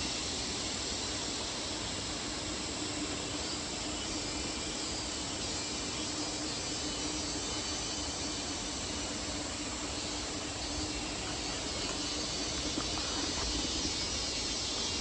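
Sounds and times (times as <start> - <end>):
rushing stream water: 8.9 - 15.0.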